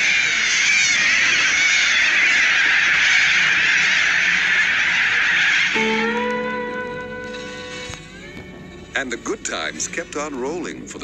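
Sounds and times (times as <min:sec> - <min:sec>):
cockatoos screeching: 0:00.0 - 0:08.4
guitar music: 0:05.7 - 0:09.0.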